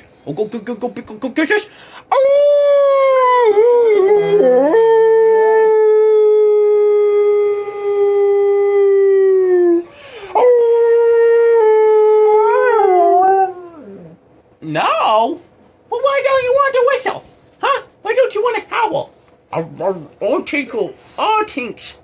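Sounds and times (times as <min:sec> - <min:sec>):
dog howling: 0:02.1 - 0:14.2.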